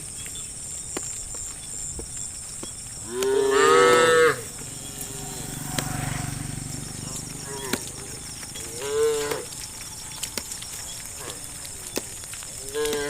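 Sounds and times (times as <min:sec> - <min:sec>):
cattle mooing: 0:03.1 - 0:10.3, 0:12.6 - 0:13.0
sharp clicks: 0:05.0 - 0:06.2, 0:07.0 - 0:13.0.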